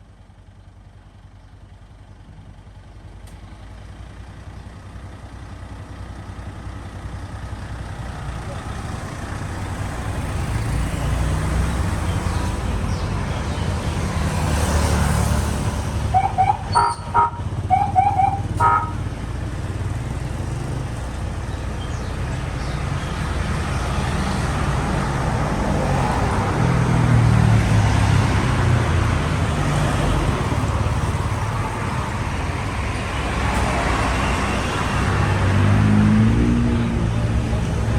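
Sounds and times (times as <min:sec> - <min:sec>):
vehicle engine running: 0:00.1 - 0:35.0
short horn toots: 0:16.1 - 0:19.0.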